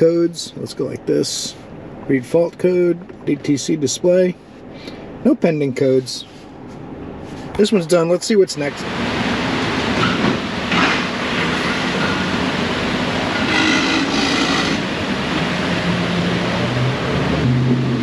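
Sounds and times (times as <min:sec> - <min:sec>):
vehicle rumbling past: 0:08.7 - 0:18.0.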